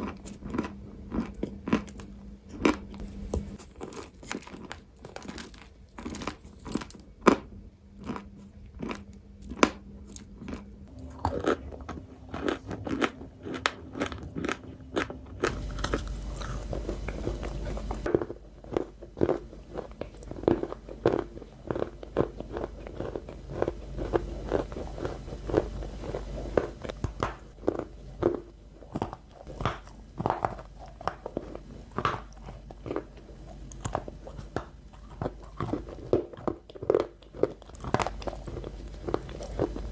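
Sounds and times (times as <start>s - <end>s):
crunchy snack chewing: 0.0s - 3.0s, 3.6s - 39.9s.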